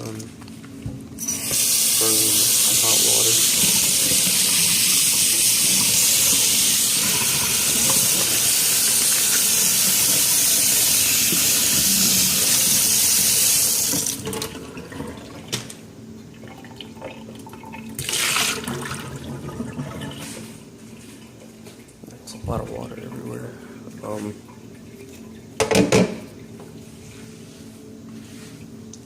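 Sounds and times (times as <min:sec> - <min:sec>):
water running from a tap: 0:01.2 - 0:14.6.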